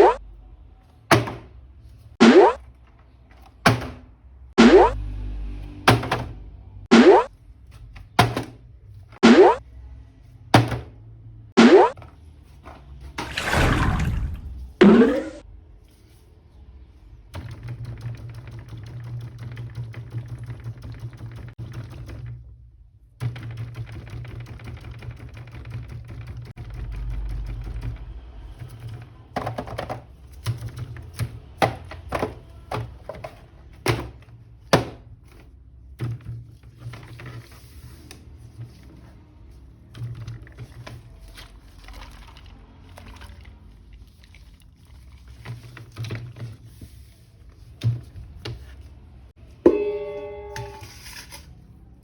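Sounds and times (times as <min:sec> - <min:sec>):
plastic toys clicking and knocking: 0:23.2 - 0:37.3
ringing tone: 0:49.7 - 0:50.9.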